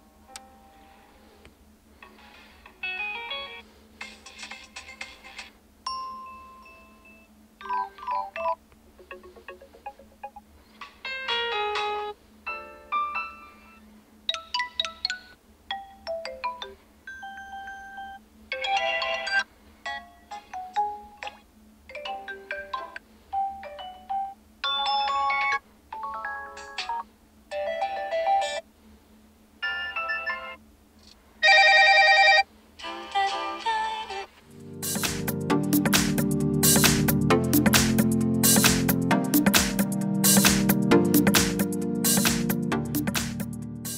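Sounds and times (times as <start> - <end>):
phone ringtone snippets: 29.6 - 30.6, 31.4 - 32.4.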